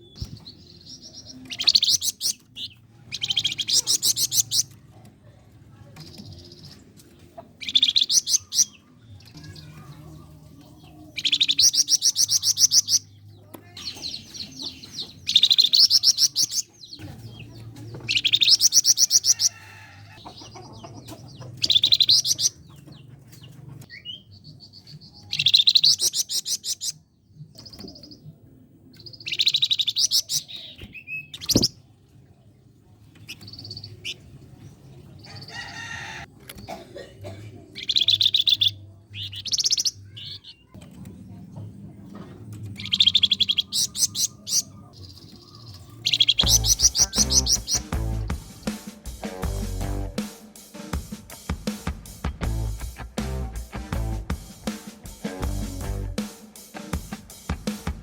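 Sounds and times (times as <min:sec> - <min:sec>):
songbird singing shrill notes: 0:07.6 - 0:08.8, 0:11.1 - 0:13.1, 0:13.8 - 0:16.7, 0:18.1 - 0:19.6, 0:21.6 - 0:22.6, 0:23.9 - 0:27.0, 0:29.0 - 0:31.8, 0:37.8 - 0:40.7, 0:42.8 - 0:48.2.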